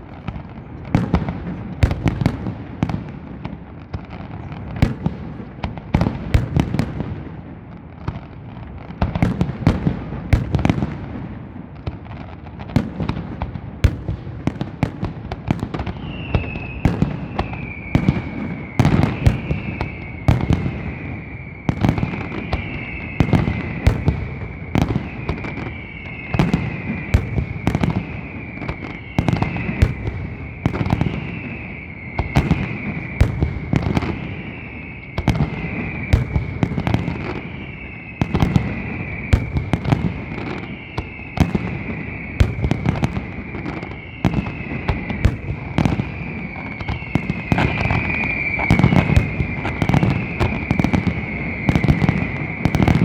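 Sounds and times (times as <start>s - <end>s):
falling firework whistles: 0.0s - 53.0s
fireworks bangs: 0.0s - 53.0s.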